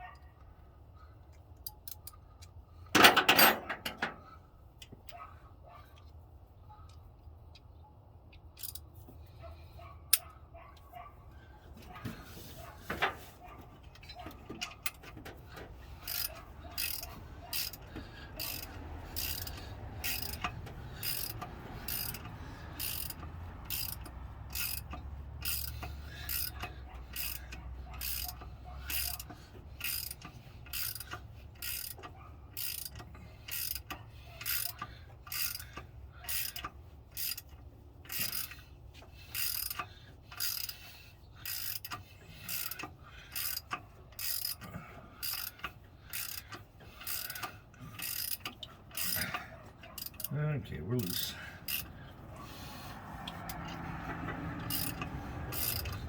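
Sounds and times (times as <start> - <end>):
ratchet wrench clicking: 1.6 - 4.2, 8.3 - 8.9, 13.9 - 50.3, 51.0 - 56.0.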